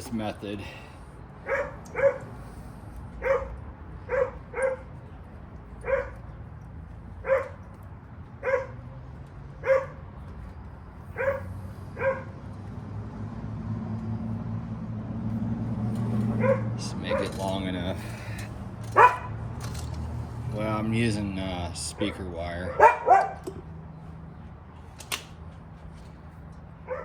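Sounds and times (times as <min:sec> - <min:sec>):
dog barking: 0:01.4 - 0:02.3, 0:03.2 - 0:04.9, 0:05.8 - 0:06.3, 0:07.2 - 0:07.7, 0:08.4 - 0:08.8, 0:09.6 - 0:10.0, 0:11.1 - 0:12.4, 0:16.3 - 0:17.4, 0:19.0 - 0:19.4, 0:22.6 - 0:23.4.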